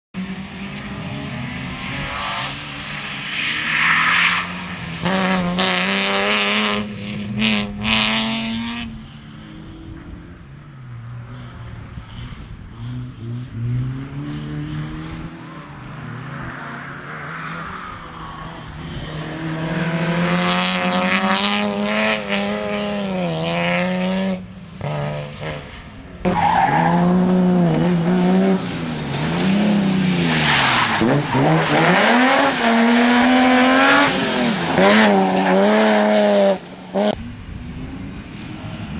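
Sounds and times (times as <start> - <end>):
car engine revving hard: 26.3 - 37.2.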